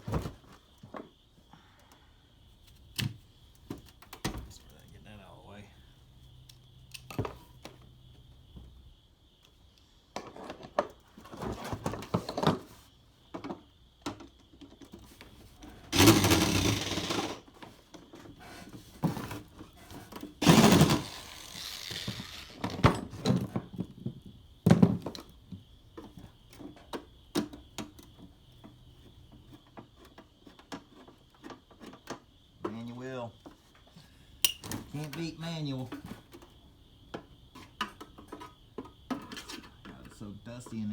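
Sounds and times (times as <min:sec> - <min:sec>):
scraping rattles: 0:15.9 - 0:17.4, 0:20.4 - 0:23.4.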